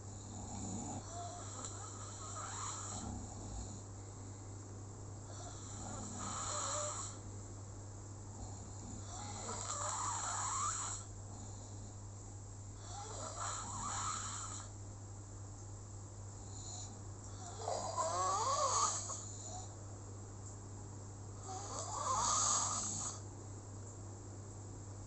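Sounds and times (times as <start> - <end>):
person snoring with whistle: 0.6 - 3.2, 5.4 - 7.2, 9.1 - 11.1, 12.9 - 14.7, 17.4 - 19.2.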